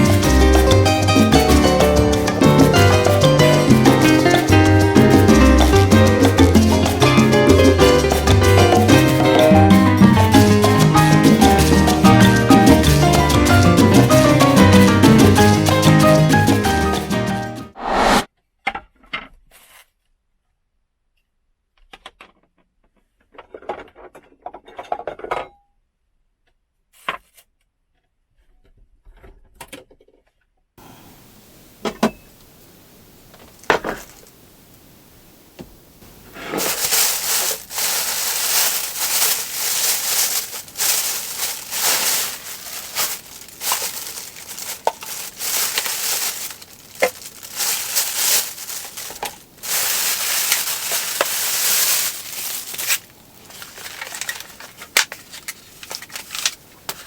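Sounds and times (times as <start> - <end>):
dense crackling with sharp pops: 30.8 - 57.0
steady hiss: 30.8 - 57.0.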